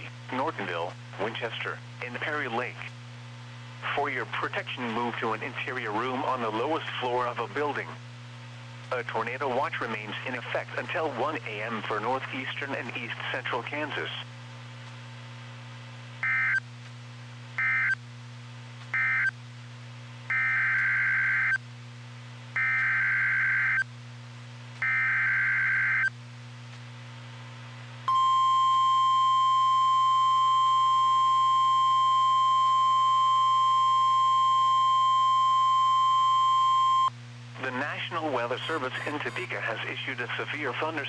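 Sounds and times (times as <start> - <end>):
low constant hum: 0.0 - 24.9, 25.5 - 41.0
steady alarm tone: 28.1 - 37.1
warbling data bursts: 38.6 - 39.5.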